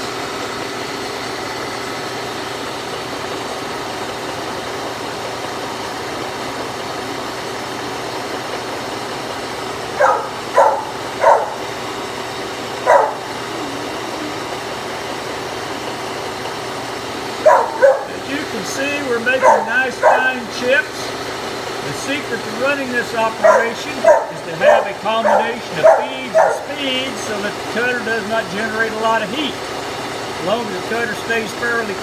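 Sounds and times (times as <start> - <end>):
milling machine running: 0.0 - 32.0
dog barking: 10.0 - 14.5, 17.3 - 21.1, 22.0 - 27.6.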